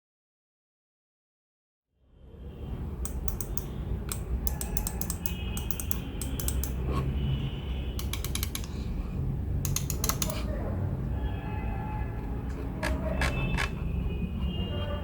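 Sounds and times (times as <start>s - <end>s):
mouse buttons clicking: 3.0s - 6.8s, 8.0s - 8.8s, 9.6s - 10.5s.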